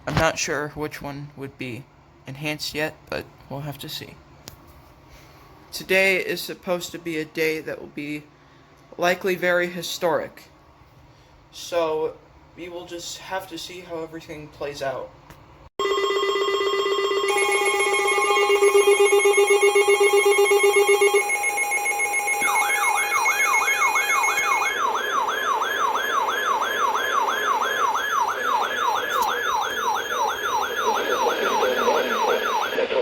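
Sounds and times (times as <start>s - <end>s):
alarm chord of steady tones: 15.8s - 32.9s
yelping siren tone: 17.2s - 33.0s.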